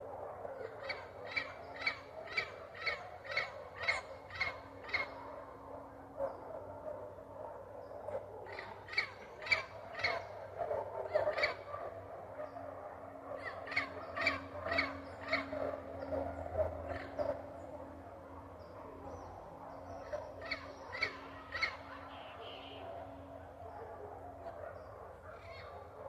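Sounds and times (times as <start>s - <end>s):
parrot calling: 20.4s - 22.8s.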